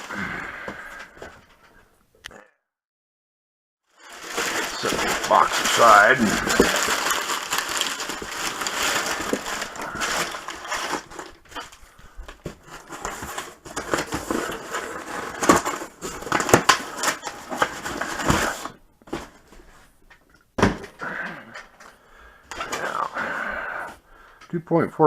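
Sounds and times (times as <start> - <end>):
packaging rustling and crinkling: 3.9 - 20.3.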